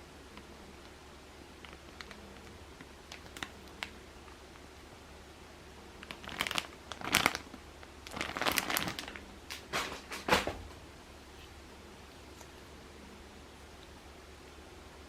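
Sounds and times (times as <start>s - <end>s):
crinkly material rustling: 1.5s - 4.6s, 5.9s - 10.6s.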